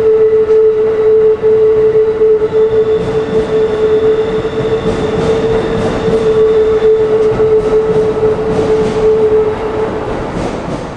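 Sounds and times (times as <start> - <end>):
steady mid-pitched tone: 0.0 - 10.2
train wheels clattering over rail joints: 2.9 - 10.9.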